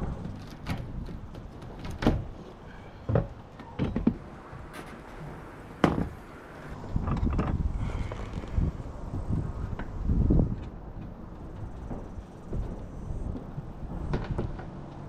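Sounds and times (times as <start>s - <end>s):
knocks and clunks on tin roof: 0.0s - 7.6s.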